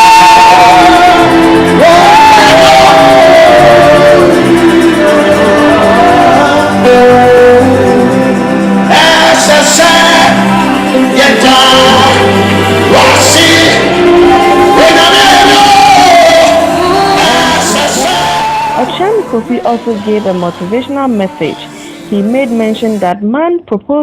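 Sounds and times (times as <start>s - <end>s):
live band with bass and guitar: 0.0s - 19.1s
person singing long sliding notes: 0.0s - 23.0s.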